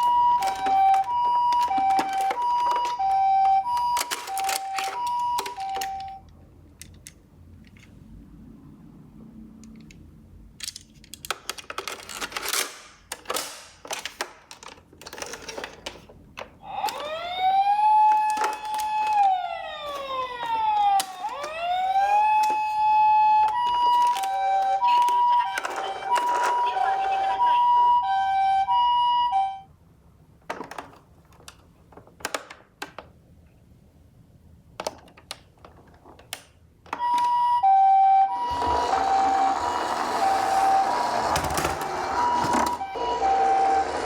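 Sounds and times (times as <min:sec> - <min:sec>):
plastic clattering and rattling: 0:00.0 - 0:06.0, 0:10.6 - 0:16.6, 0:18.0 - 0:22.7, 0:30.4 - 0:33.2, 0:34.8 - 0:37.1
toy two-tone siren: 0:00.0 - 0:06.2, 0:16.6 - 0:29.7, 0:37.0 - 0:44.0
toy wailing siren: 0:00.0 - 0:06.2, 0:16.6 - 0:29.7, 0:37.0 - 0:44.0.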